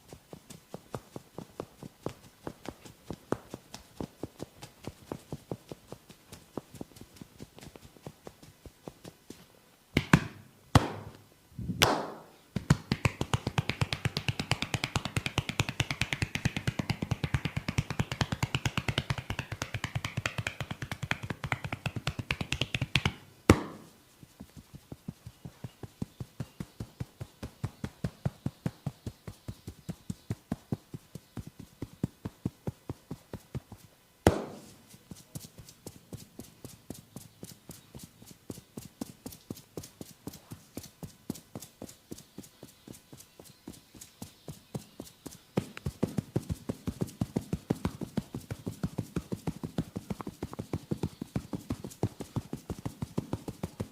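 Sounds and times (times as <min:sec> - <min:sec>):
hands tapping on head: 0:10.0 - 0:11.2, 0:11.8 - 0:23.9, 0:34.3 - 0:34.7, 0:45.6 - 0:53.9
loud hand slaps: 0:10.0 - 0:11.2, 0:11.8 - 0:23.9, 0:34.3 - 0:34.7
hands drumming fast: 0:11.8 - 0:23.9, 0:34.3 - 0:34.7, 0:45.6 - 0:53.9.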